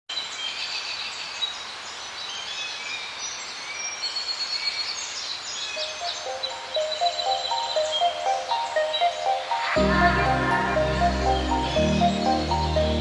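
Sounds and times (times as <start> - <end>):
birds chirping and whistling: 5.6 - 13.0.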